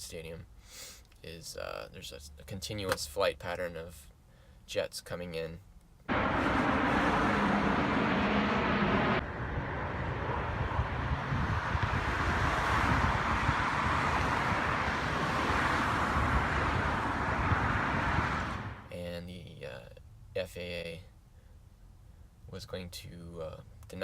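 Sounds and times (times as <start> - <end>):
wind on microphone: 6.1 - 18.9
traffic roar: 6.1 - 19.0.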